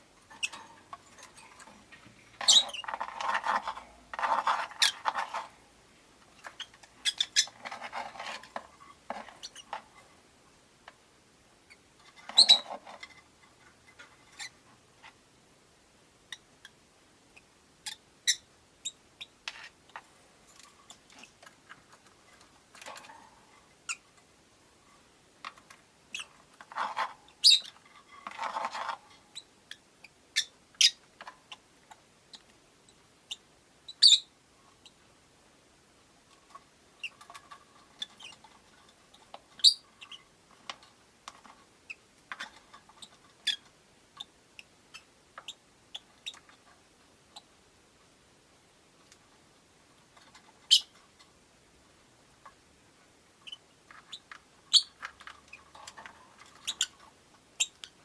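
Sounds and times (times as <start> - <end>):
rustling noise: 0.0 - 10.2, 12.0 - 15.2
lovebirds chirping: 2.3 - 3.0, 6.4 - 7.6, 27.3 - 27.8, 32.3 - 35.0, 39.6 - 40.3, 50.6 - 51.0, 53.4 - 55.6, 56.6 - 57.0, 57.6 - 58.0.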